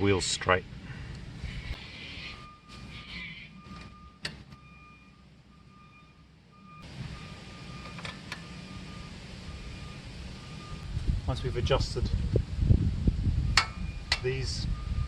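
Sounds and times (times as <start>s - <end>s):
reversing alarm beeping: 1.8s - 10.9s, 13.5s - 15.0s
steady low rumble: 6.6s - 15.0s
sharp metallic clicks: 13.6s - 14.3s.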